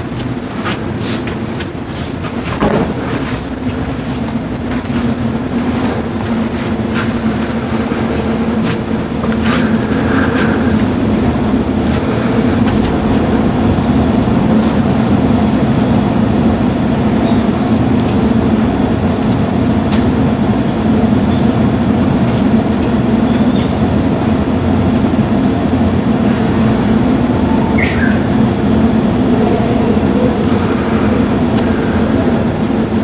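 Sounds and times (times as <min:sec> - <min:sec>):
steady low rumble: 0:00.0 - 0:33.0
faint bird calls: 0:27.5 - 0:28.4.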